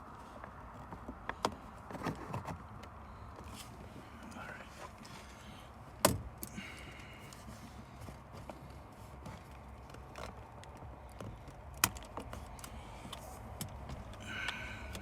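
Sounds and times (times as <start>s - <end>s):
plastic car trim clicking and rattling: 0.9s - 3.6s, 5.9s - 6.5s, 7.3s - 15.0s.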